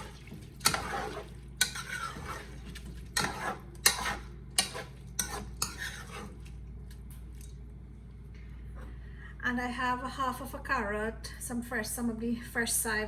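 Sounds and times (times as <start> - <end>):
metal spoon scraping a pot: 0.0 - 6.5
steady low hum: 0.0 - 13.0.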